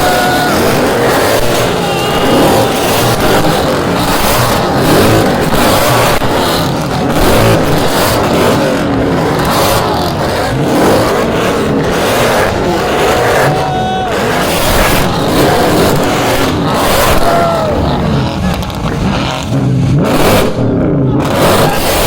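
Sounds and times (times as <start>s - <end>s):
car engines revving hard: 0.0s - 22.0s.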